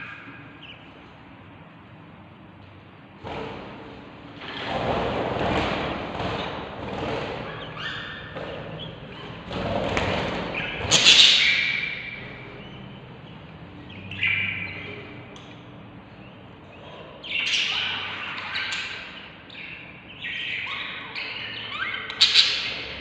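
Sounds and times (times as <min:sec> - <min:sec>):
high bird chirps: 0:00.0 - 0:00.9, 0:10.5 - 0:23.0
baby birds raspy begging calls: 0:07.0 - 0:23.0.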